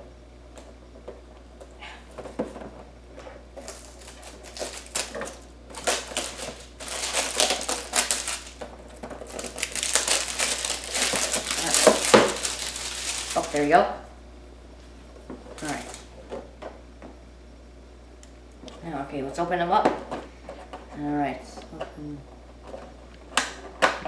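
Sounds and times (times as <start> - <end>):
toy packaging crinkling and tearing: 3.6 - 13.7, 15.6 - 16.0.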